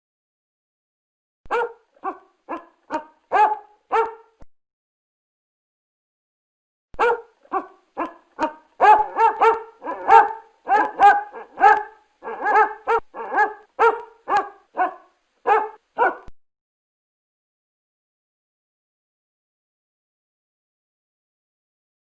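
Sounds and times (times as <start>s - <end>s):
dog barking: 1.5s - 4.4s, 7.0s - 16.3s.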